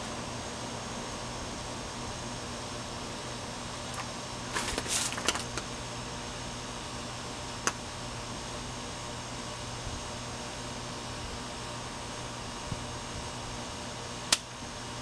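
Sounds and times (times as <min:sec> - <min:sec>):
ceiling fan motor hum: 0:00.0 - 0:15.0
rustling clicks: 0:04.5 - 0:05.7.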